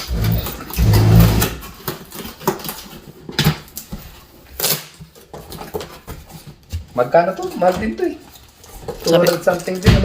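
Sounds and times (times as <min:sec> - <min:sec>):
packaging rustling: 0:00.0 - 0:10.0.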